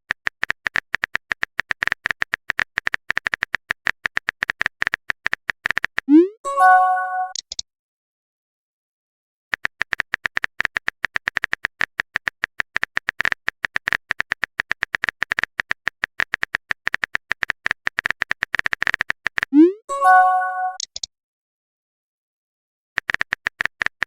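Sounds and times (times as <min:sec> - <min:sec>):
phone keyboard typing beeps: 0:00.2 - 0:07.6, 0:12.2 - 0:21.1
multi-note chime alert: 0:06.1 - 0:07.4, 0:19.6 - 0:20.8.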